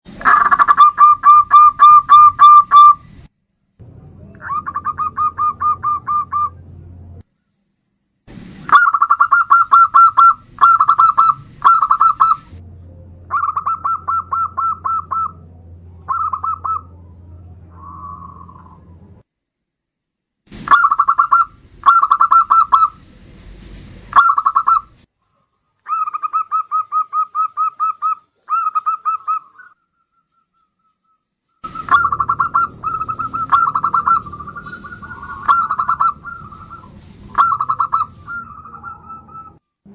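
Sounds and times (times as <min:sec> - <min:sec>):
dove cooing: 0:04.4 - 0:06.6, 0:08.7 - 0:12.5, 0:13.3 - 0:18.9, 0:20.7 - 0:23.0, 0:25.9 - 0:31.0, 0:31.6 - 0:39.6.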